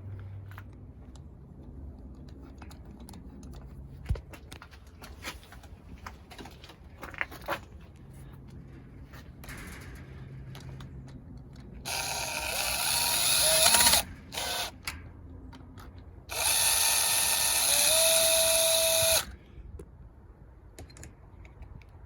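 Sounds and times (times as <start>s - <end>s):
small clicks of parts handled: 0.2s - 7.6s, 14.8s - 16.2s, 20.7s - 22.0s
power drill driving screws: 11.9s - 14.8s, 16.3s - 19.3s.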